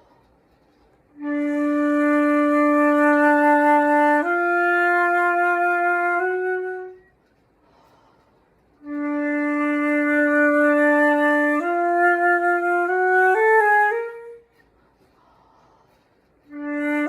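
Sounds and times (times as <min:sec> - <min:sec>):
solo flute long held notes: 0:01.1 - 0:07.3, 0:08.8 - 0:14.6, 0:16.4 - 0:17.0.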